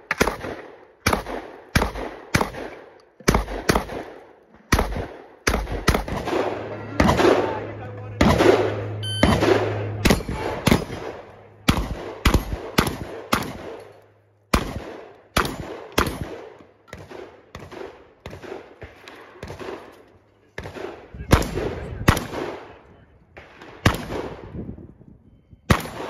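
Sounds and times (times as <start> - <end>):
shotgun shots: 0.0 - 13.9, 14.5 - 19.9, 20.6 - 22.7, 23.4 - 24.5, 25.7 - 26.0
faint ringing tones: 8.8 - 11.6.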